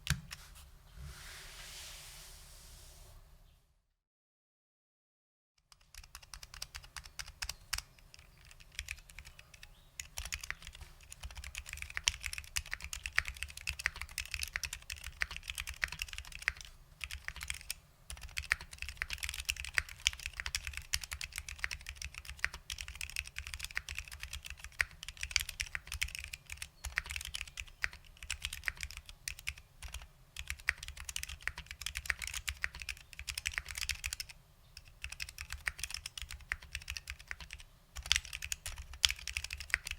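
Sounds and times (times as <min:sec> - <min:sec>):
mechanical keyboard typing: 0:05.7 - 0:39.9.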